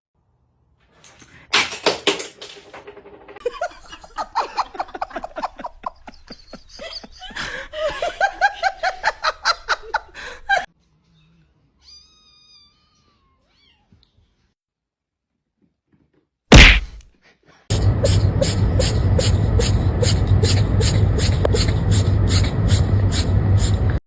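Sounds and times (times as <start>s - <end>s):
human laughter: 3.4s - 10.7s.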